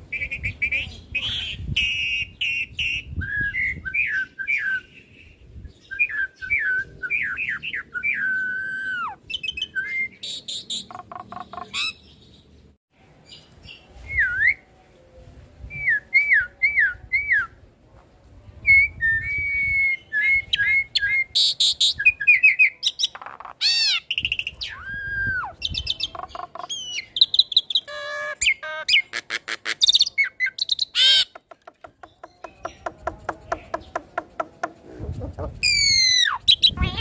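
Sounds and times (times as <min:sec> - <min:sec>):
bird singing whistles and squawks: 0:05.8 - 0:12.0, 0:35.6 - 0:37.0.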